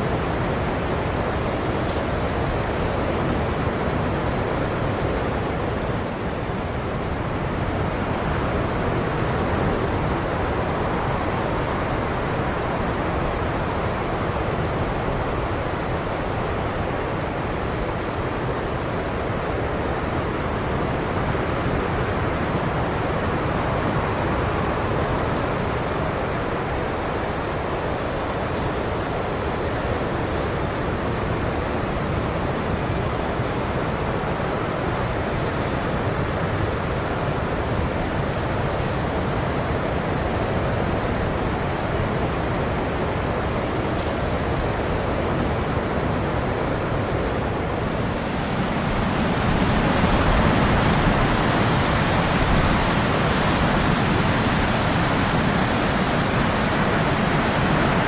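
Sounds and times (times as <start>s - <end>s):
ocean surf on beach: 0.0s - 58.0s.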